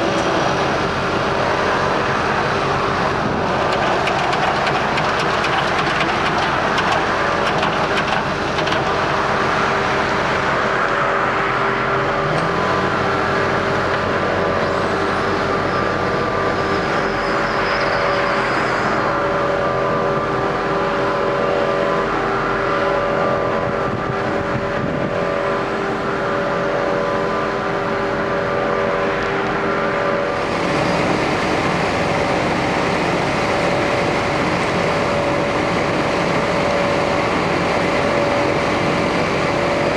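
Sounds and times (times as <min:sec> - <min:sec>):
diesel paving machinery running: 0:00.0 - 0:39.9.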